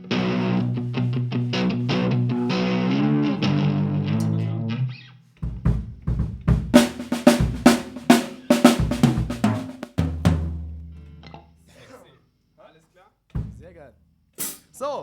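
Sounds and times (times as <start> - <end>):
electric guitar chord: 0.0 - 4.6
drum kit rock beat: 5.4 - 11.3, 13.4 - 14.7.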